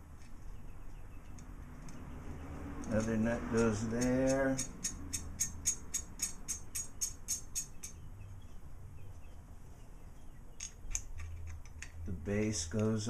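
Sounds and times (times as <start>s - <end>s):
nut ticking on threaded rod: 2.8s - 8.0s.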